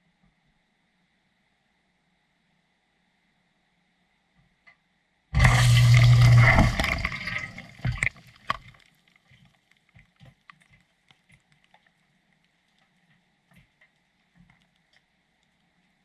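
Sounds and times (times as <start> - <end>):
low hum: 5.4 - 8.6
water gushing: 5.4 - 8.7
water dripping: 5.4 - 8.8.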